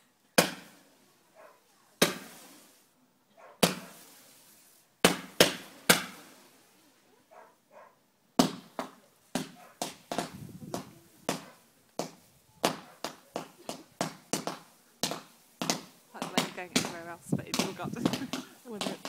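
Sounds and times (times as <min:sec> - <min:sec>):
fireworks banging: 0:00.4 - 0:01.0, 0:02.0 - 0:02.8, 0:03.6 - 0:06.6, 0:08.4 - 0:19.0.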